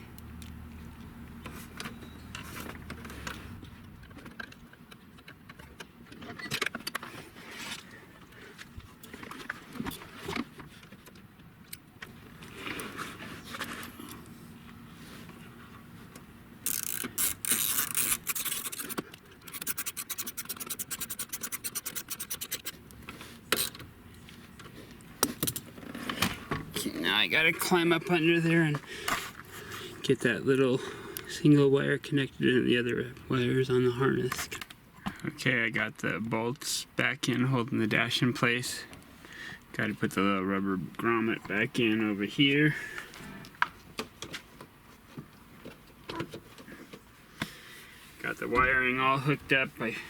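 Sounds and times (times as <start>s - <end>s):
socket ratchet clicking: 16.7s - 22.8s
tools scraping and knocking: 16.7s - 22.8s.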